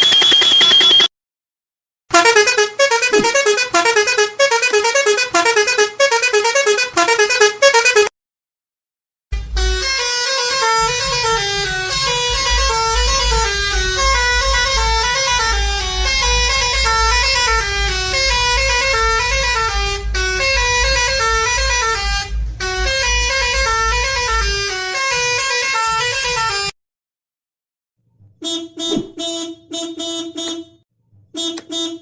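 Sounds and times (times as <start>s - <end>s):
bus musical horn melody: 2.1s - 8.1s, 9.3s - 26.8s, 28.4s - 30.8s, 31.4s - 32.0s
low rumble: 10.6s - 24.7s.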